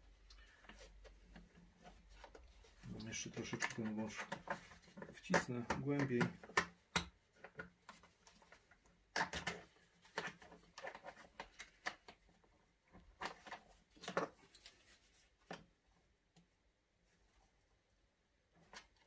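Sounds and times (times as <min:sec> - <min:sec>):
small parts clicking and knocking: 0:00.2 - 0:14.8.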